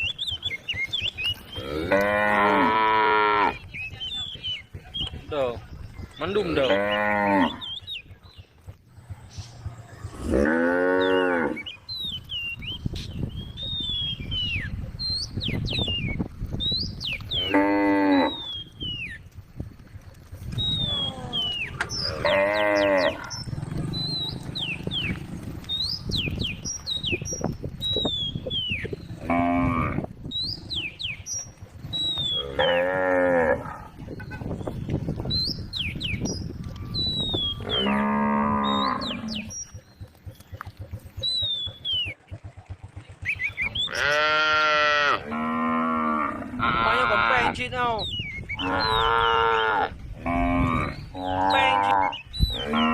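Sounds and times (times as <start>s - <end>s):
cows mooing: 1.4s - 3.7s, 6.3s - 7.8s, 9.7s - 11.8s, 17.2s - 18.8s, 20.8s - 26.1s, 28.9s - 31.3s, 32.2s - 34.4s, 37.3s - 39.8s, 43.7s - 47.6s, 48.6s - 52.9s.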